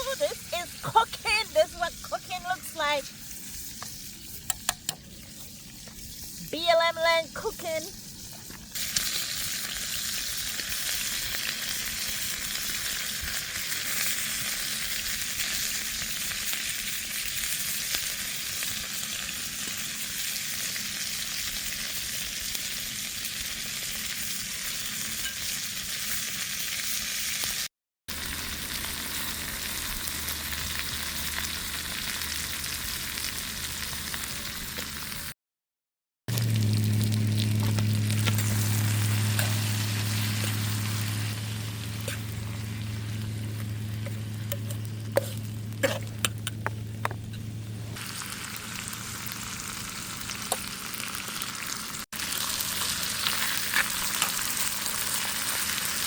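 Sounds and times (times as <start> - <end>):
food sizzling in a pan: 0.0 - 35.4, 36.3 - 46.4, 47.8 - 56.0
low hum: 36.3 - 50.5.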